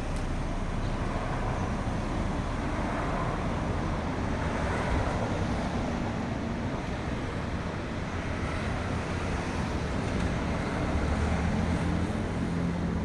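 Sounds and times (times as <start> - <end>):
road and tyre noise: 0.0 - 13.0.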